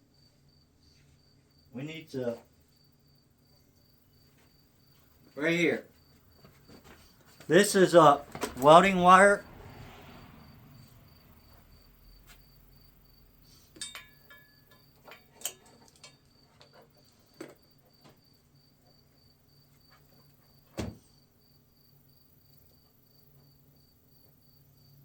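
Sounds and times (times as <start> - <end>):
cricket chirping: 0.0 - 25.0
metallic clicks of wire and tools: 13.6 - 17.6.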